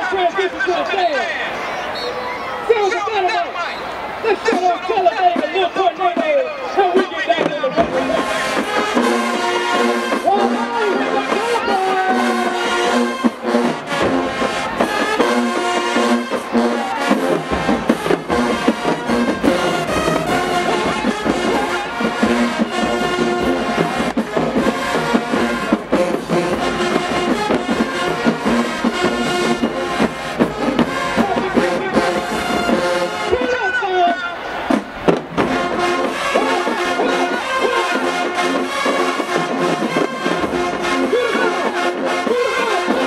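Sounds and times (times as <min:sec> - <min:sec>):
brass marching band playing: 0:00.0 - 0:43.0
bass drums: 0:12.1 - 0:33.2, 0:34.7 - 0:37.1.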